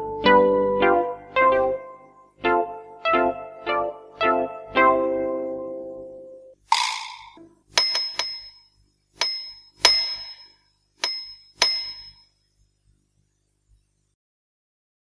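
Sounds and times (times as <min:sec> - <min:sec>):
small metallic bell ringing: 0:07.0 - 0:12.3.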